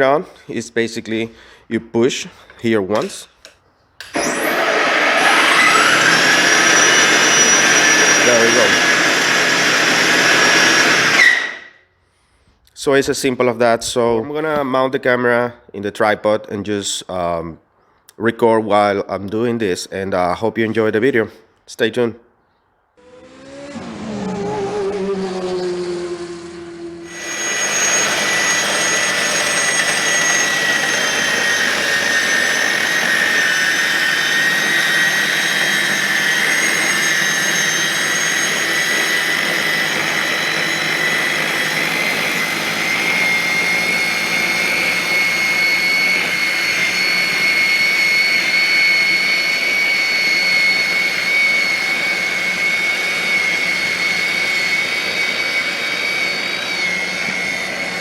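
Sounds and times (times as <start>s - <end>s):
electric motor whine: 4.0s - 11.8s, 23.0s - 58.0s
snow blower throwing slushy snow: 4.2s - 11.5s, 27.1s - 45.2s.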